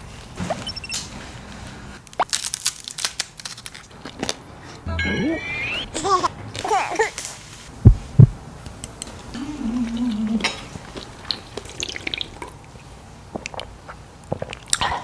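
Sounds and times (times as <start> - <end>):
person humming: 4.9 - 6.2.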